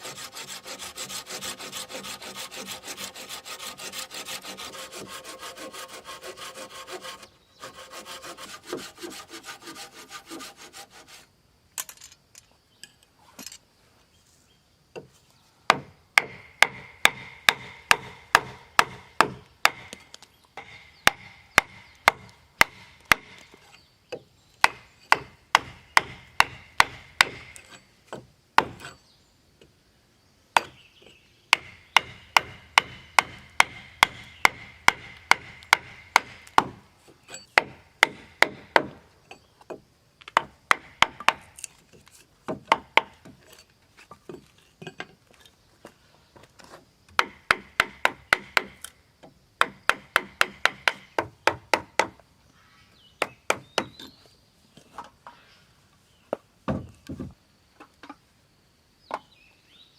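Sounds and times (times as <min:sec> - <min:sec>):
hand tool striking wood: 0:15.7 - 0:29.0, 0:31.5 - 0:41.7, 0:42.5 - 0:43.4, 0:47.2 - 0:48.9, 0:49.6 - 0:52.2, 0:53.2 - 0:54.2.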